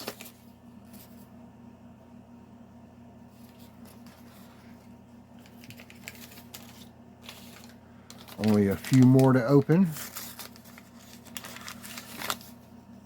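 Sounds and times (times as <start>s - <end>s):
low electrical hum: 0.0s - 13.0s
plastic toys clicking and rustling: 5.5s - 10.5s.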